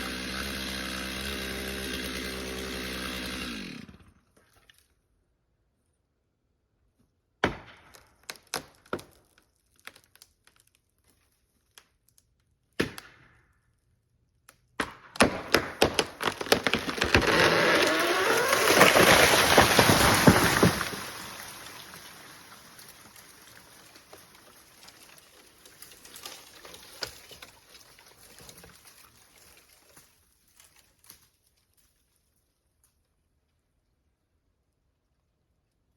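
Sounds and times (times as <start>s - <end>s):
wood cracking: 7.4s - 13.6s, 14.4s - 31.8s
tree crashing through branches: 15.2s - 30.0s.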